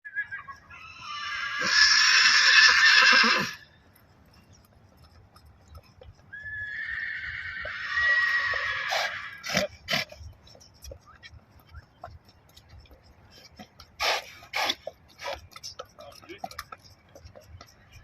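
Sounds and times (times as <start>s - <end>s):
horse neighing: 0.1s - 3.6s, 6.4s - 10.2s.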